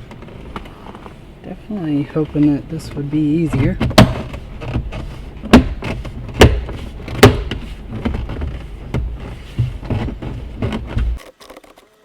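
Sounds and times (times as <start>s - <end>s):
handling rumble: 0.0s - 11.2s
plastic panel sharp knocks: 3.5s - 11.2s
plastic clicks and scraping: 3.6s - 12.0s.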